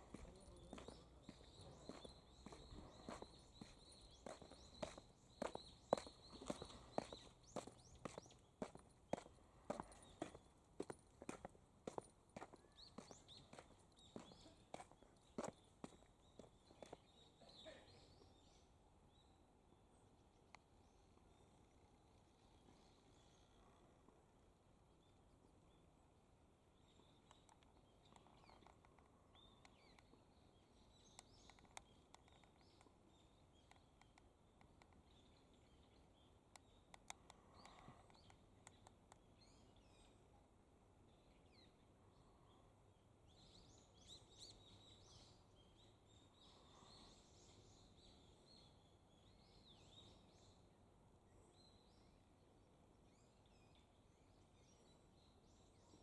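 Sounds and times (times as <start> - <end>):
small birds chirping: 0.0 - 24.2, 24.8 - 56.0
soft clicks: 27.2 - 30.2, 31.1 - 33.0, 33.6 - 35.1, 36.5 - 39.3.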